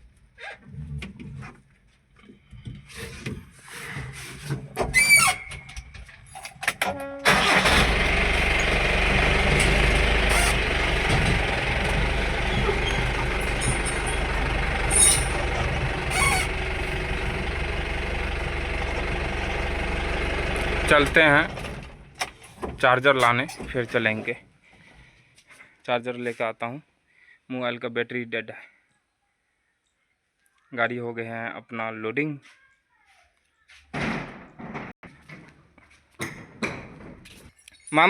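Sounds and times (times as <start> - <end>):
engine cranking and idling: 6.5 - 23.9
knocks and clicks: 8.4 - 18.0.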